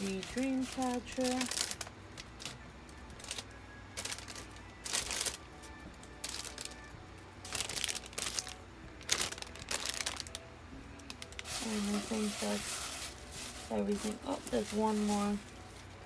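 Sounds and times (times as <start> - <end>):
packaging crinkling: 0.0 - 5.4, 6.1 - 6.9, 7.5 - 10.4, 11.0 - 16.0
faint background music: 0.0 - 16.0.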